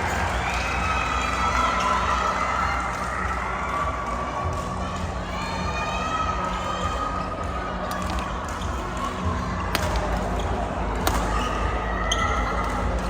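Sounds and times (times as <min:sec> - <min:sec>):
racket striking shuttlecock: 0:09.7 - 0:10.2, 0:11.0 - 0:11.4.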